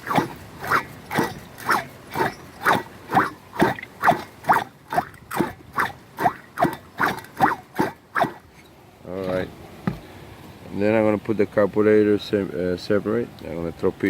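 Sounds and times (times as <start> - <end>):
two-stroke engine turned by hand: 0.0 - 8.4.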